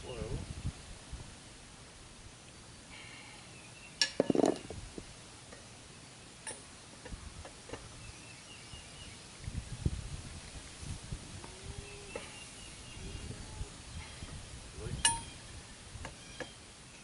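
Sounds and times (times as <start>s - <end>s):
faint bird chirps: 11.5s - 17.0s.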